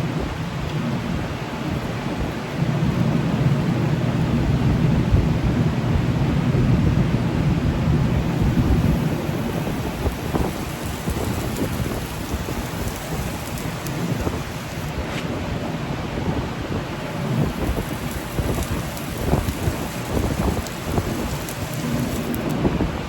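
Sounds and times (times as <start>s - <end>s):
gas burner roaring: 7.2s - 23.0s.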